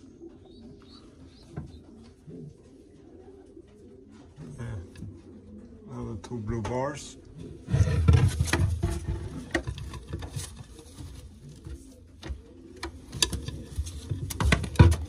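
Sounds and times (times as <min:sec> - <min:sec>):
pigeons cooing: 0:00.0 - 0:15.0
rustling and handling thumps: 0:07.7 - 0:15.0.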